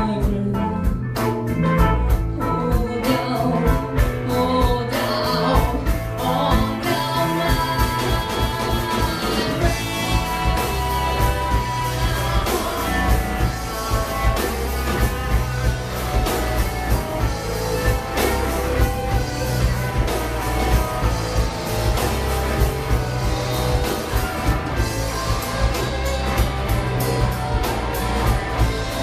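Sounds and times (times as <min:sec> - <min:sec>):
bass guitar: 0:00.0 - 0:29.0
electric guitar: 0:00.0 - 0:29.0
drum strokes: 0:07.6 - 0:29.0.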